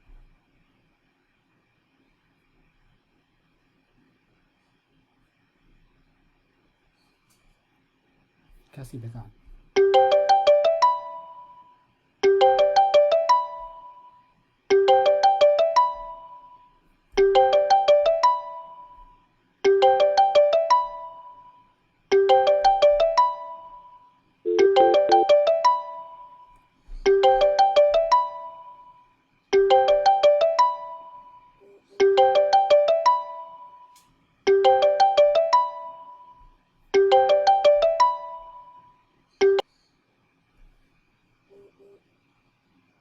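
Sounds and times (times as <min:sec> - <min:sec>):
telephone ringtone: 0:09.8 - 0:11.6, 0:12.2 - 0:14.1, 0:14.7 - 0:16.6, 0:19.7 - 0:21.4, 0:22.1 - 0:26.4, 0:29.6 - 0:31.4, 0:32.0 - 0:36.4, 0:37.0 - 0:39.6.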